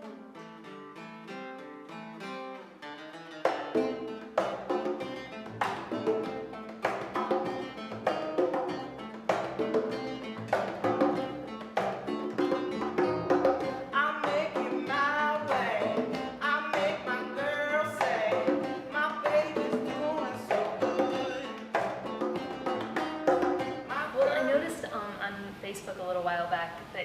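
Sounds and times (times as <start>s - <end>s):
guitar: 0.0s - 25.8s
percussion beat: 3.4s - 25.0s
person singing: 13.0s - 22.3s, 23.9s - 25.0s.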